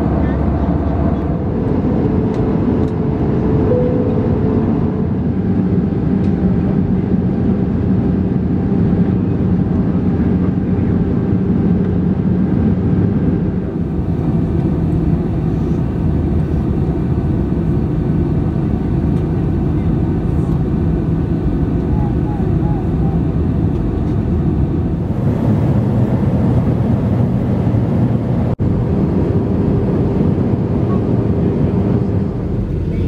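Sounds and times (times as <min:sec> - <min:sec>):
low steady hum: 0:00.0 - 0:09.5
airliner cabin engine roar: 0:00.0 - 0:33.0.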